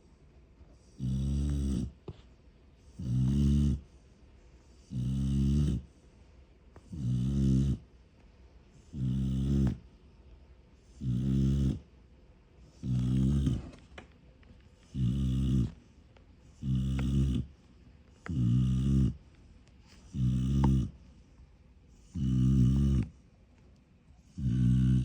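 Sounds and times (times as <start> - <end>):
quiet breaths: 0.0 - 25.0
deep rumbling snore: 0.8 - 2.0, 2.9 - 3.9, 4.8 - 5.9, 6.9 - 7.9, 8.9 - 9.8, 11.0 - 11.9, 12.8 - 13.8, 14.9 - 15.8, 16.6 - 17.6, 18.3 - 19.2, 20.1 - 21.0, 22.0 - 23.1, 24.3 - 25.0.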